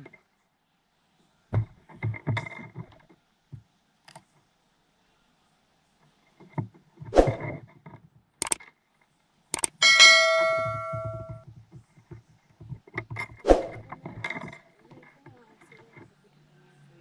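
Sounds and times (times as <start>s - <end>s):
ringing metal clang: 9.8s - 11.4s
hard objects knocking and clicking: 10.5s - 16.0s.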